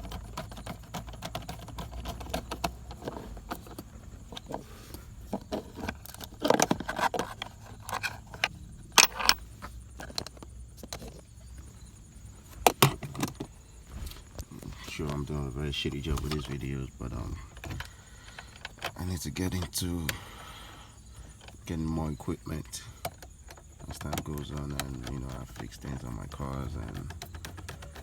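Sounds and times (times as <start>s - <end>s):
metallic jingling: 5.9s - 20.2s
light clicks and taps: 22.8s - 28.0s.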